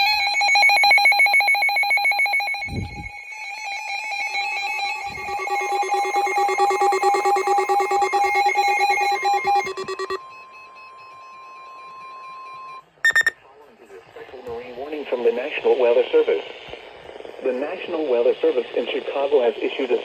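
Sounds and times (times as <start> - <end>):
lower-pitched alarm: 0.0 - 13.4
steady warning tone: 0.0 - 13.4
pulsing alert alarm beeps: 4.1 - 11.3, 13.0 - 13.4.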